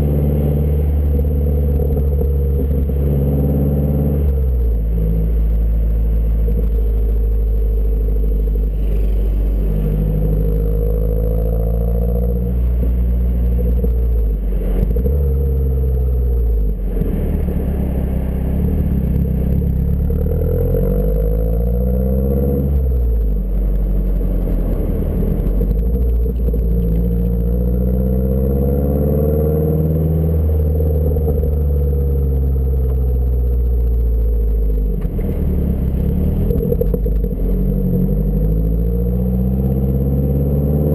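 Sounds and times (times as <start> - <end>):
car engine revving with deep drone: 0.0 - 40.9.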